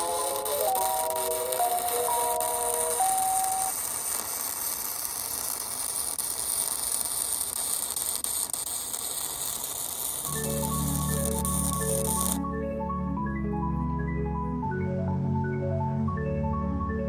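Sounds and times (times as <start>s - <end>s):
high-pitched hiss: 0.0s - 12.4s
music with bass line: 10.3s - 17.0s.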